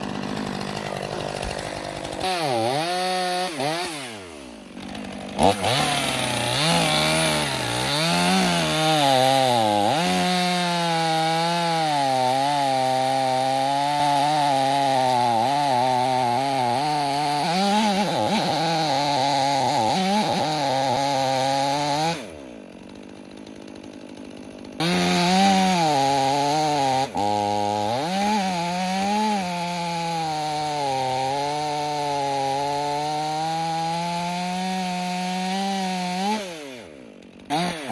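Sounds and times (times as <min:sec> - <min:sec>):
chainsaw cutting wood: 0:00.0 - 0:37.9.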